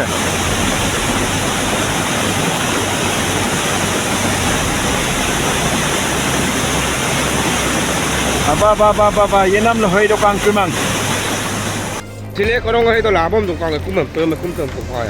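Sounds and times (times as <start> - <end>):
river water rushing roar: 0.0 - 12.0.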